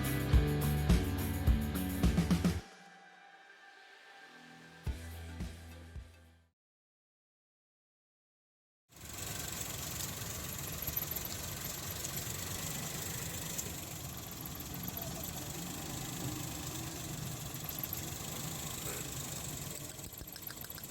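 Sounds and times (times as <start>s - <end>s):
car engine idling: 9.0s - 20.9s.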